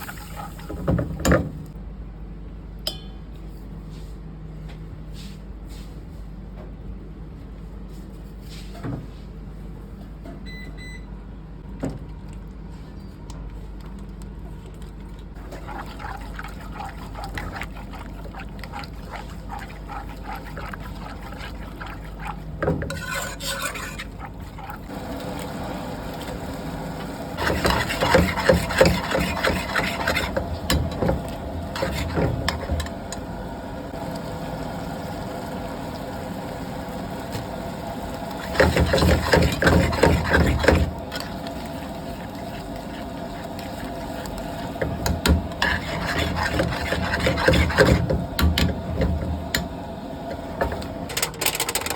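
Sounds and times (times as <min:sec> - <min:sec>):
steady background hum: 0:00.0 - 0:51.9
utensils scraping on a pan: 0:15.5 - 0:24.9, 0:27.4 - 0:30.9, 0:31.8 - 0:32.8, 0:38.4 - 0:41.6, 0:42.4 - 0:48.2.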